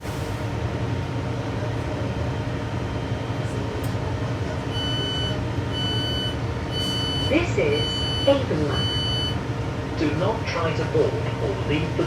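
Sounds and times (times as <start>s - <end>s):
train low rumble: 0.0s - 12.0s
door opening beeps: 4.7s - 9.4s.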